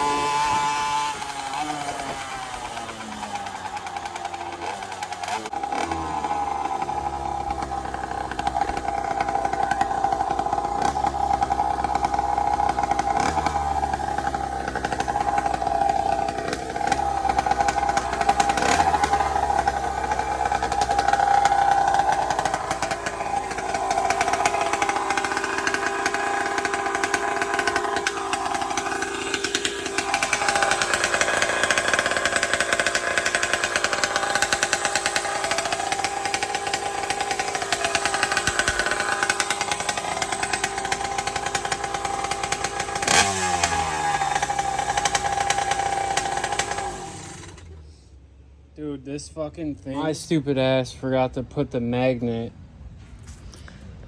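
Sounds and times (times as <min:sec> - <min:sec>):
two-stroke moped engine running: 0:00.0 - 0:47.8.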